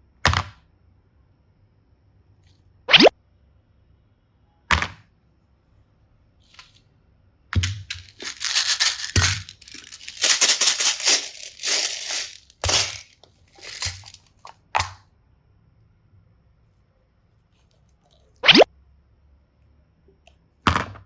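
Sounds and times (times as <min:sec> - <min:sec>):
packaging crinkling and crackling: 0:07.6 - 0:14.3.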